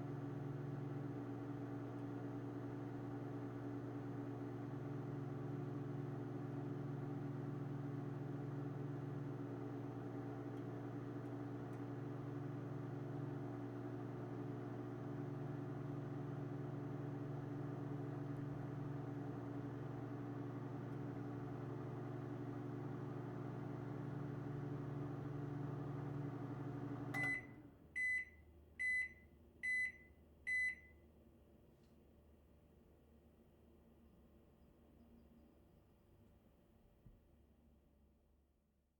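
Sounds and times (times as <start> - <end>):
microwave oven humming: 0.0 - 31.0.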